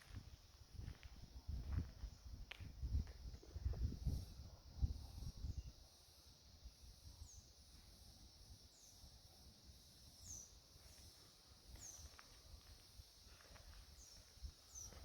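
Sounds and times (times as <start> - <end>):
bird chirping: 10.2 - 10.6.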